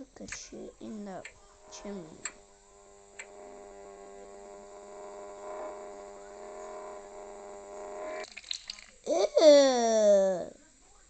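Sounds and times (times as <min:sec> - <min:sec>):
buzzing hum: 0:00.0 - 0:09.1
click: 0:00.3 - 0:00.6, 0:03.1 - 0:03.4.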